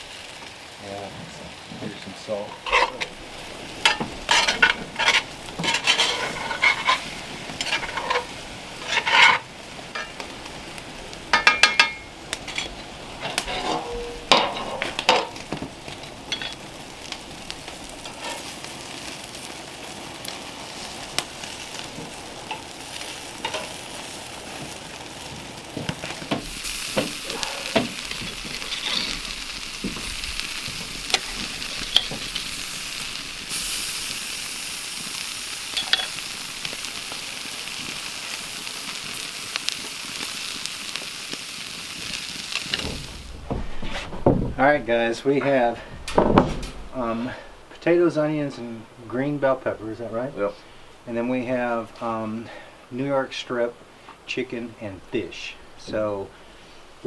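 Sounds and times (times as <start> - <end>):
vegetables sizzling in a skillet: 0.0 - 45.9, 46.8 - 57.0
utensil scraping and knocking pan: 2.5 - 10.2, 11.3 - 16.6, 26.2 - 32.5.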